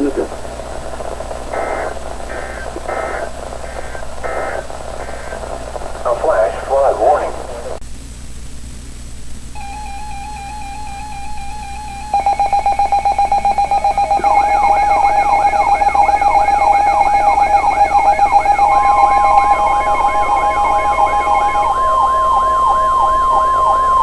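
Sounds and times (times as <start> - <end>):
rapidly pulsing beep: 0.0 - 6.9, 9.6 - 24.0
steady warning alarm tone: 0.0 - 7.2, 9.6 - 24.0
falling siren-like sweep: 14.0 - 24.0.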